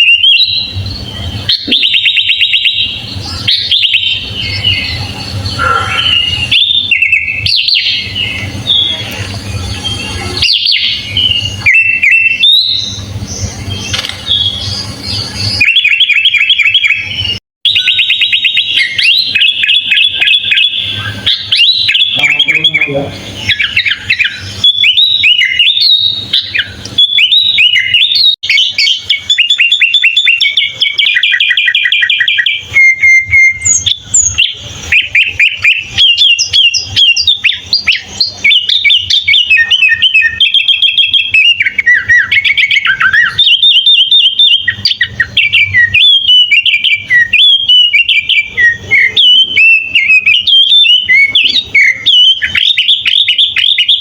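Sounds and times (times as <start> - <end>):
bird singing whistled chirps: 0.0 - 54.0
bird rattling trills: 0.4 - 15.4.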